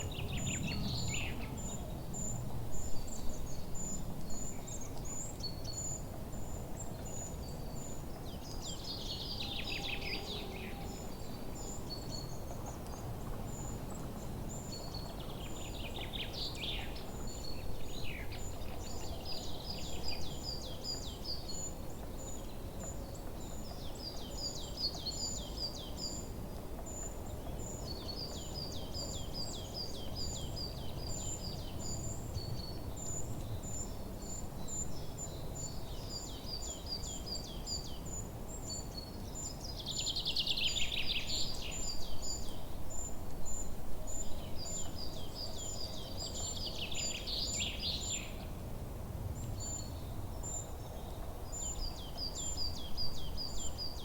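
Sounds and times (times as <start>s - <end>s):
low background noise: 0.0s - 54.0s.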